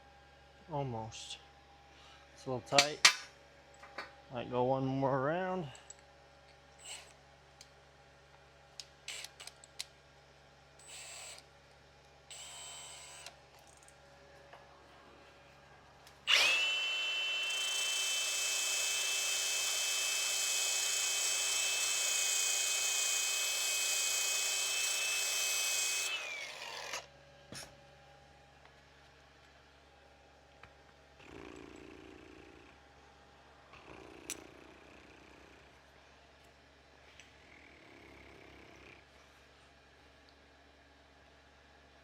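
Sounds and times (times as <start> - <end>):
electric grinder running: 16.3 - 27.1.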